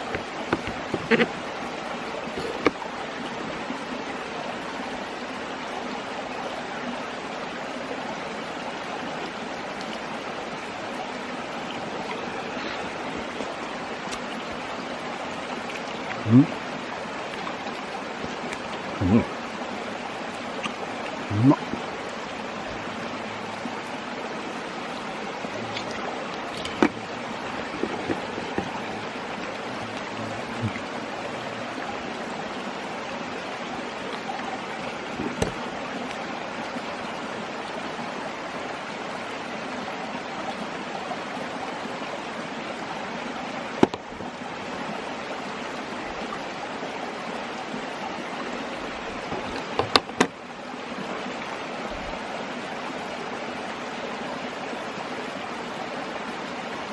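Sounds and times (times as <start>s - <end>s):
stream babbling: 0.0s - 56.9s
sharp clicks and knocks: 49.3s - 50.3s.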